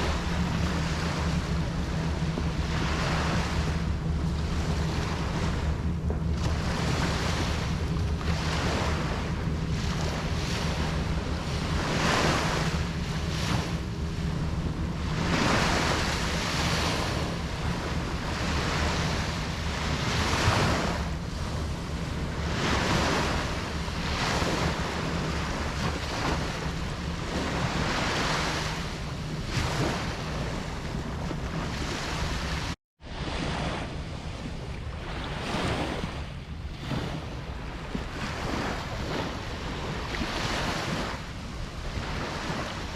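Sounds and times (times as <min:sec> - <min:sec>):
ocean waves breaking: 0:00.0 - 0:42.9
wind rumble on microphone: 0:00.0 - 0:42.9.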